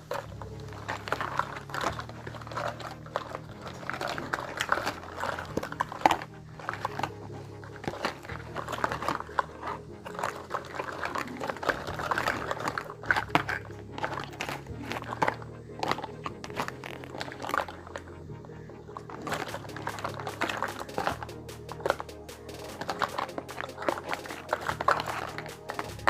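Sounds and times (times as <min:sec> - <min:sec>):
packaging crinkling: 0:00.0 - 0:26.0
soft background music: 0:00.0 - 0:26.0
small plastic pieces clicking: 0:18.9 - 0:26.0.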